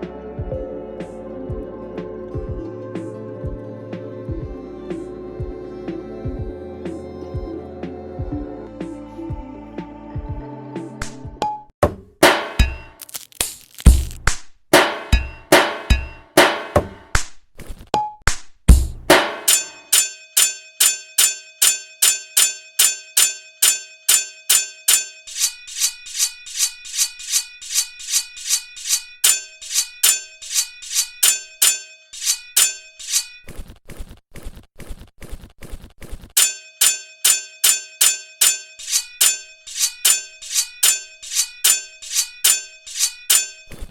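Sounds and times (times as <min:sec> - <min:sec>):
metallic ringing strikes: 0:12.2 - 0:13.0, 0:14.8 - 0:17.0, 0:18.7 - 0:33.4, 0:36.4 - 0:43.8.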